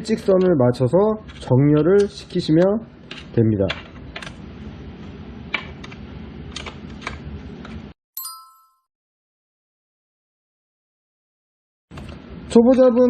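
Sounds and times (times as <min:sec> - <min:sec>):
bell-like ding: 0:08.2 - 0:08.9.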